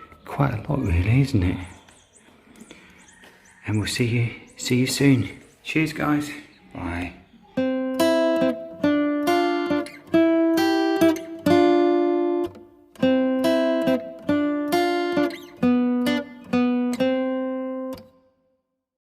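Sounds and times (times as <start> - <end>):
acoustic guitar strummed chords: 7.6 - 18.2.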